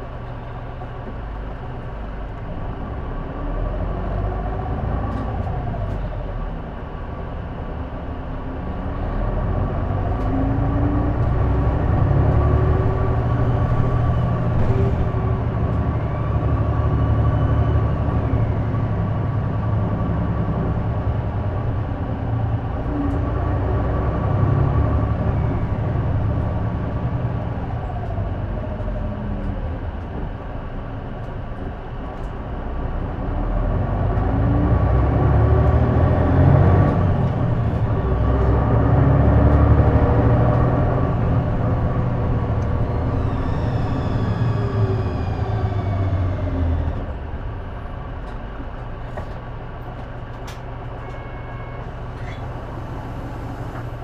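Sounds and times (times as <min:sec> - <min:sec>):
bus engine running: 0:00.0 - 0:54.0.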